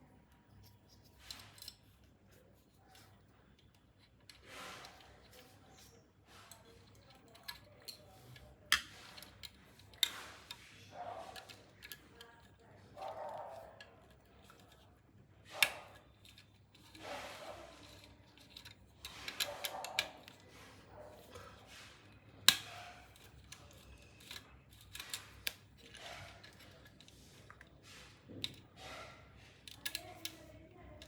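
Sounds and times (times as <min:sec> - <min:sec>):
hand tools clicking and tapping: 0:17.6 - 0:20.5, 0:21.2 - 0:29.0, 0:29.6 - 0:31.0.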